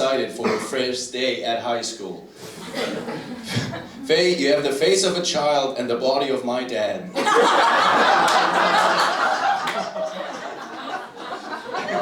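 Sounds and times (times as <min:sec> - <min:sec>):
audience laughing: 0:02.4 - 0:04.0, 0:07.2 - 0:12.0.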